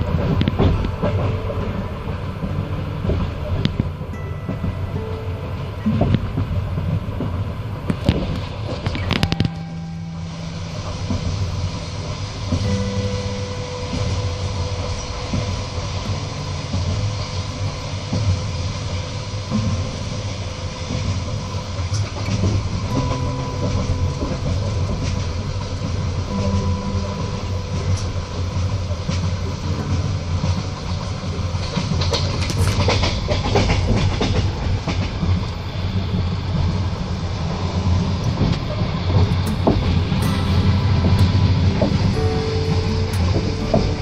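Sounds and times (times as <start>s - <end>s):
train wheels rumbling on rails: 0.0s - 44.0s.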